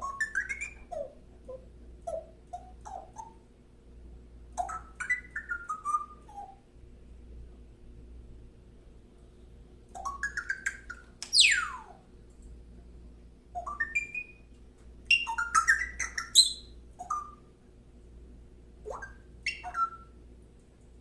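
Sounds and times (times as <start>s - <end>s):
bird whistling and chirping: 0.0s - 1.2s, 4.6s - 6.6s, 10.0s - 12.0s, 13.6s - 14.5s, 15.1s - 17.5s, 18.9s - 20.2s
bird clicks: 11.2s - 11.4s.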